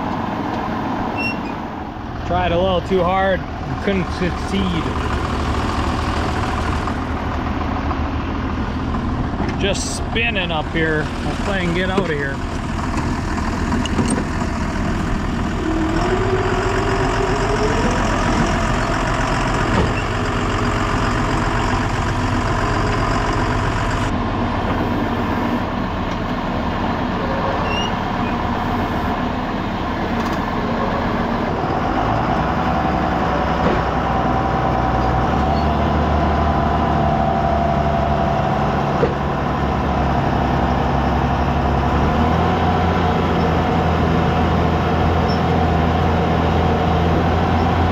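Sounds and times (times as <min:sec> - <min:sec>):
tractor engine running: 0:00.0 - 0:47.9.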